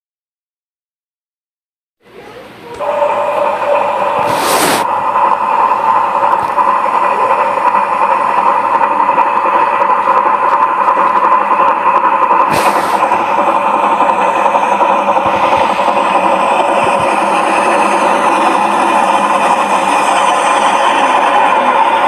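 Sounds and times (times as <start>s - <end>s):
steam locomotive engine hum: 2.1s - 22.0s
sharp hiss of steam: 4.0s - 4.9s, 12.4s - 21.6s.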